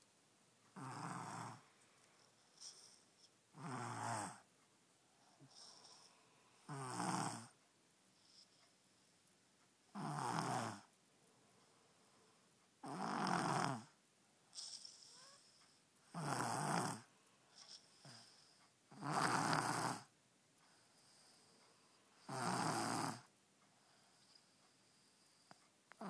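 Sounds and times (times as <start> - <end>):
faint breaths: 0.6 - 9.4, 10.7 - 12.8, 13.8 - 26.0
baby snoring: 0.8 - 1.7, 2.6 - 4.4, 5.4 - 7.6, 9.9 - 10.9, 12.8 - 20.1, 22.2 - 23.3.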